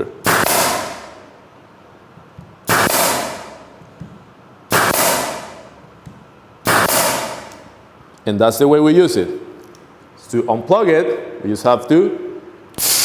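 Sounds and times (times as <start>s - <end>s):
air stapler firing into wood: 0.2s - 1.2s, 2.6s - 3.6s, 4.7s - 5.7s, 6.6s - 7.7s, 12.8s - 13.0s.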